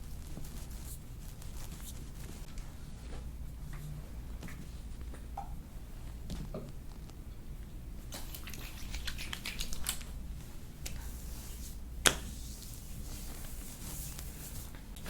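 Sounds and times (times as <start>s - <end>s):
hands massaging skin with lotion: 8.1s - 14.8s.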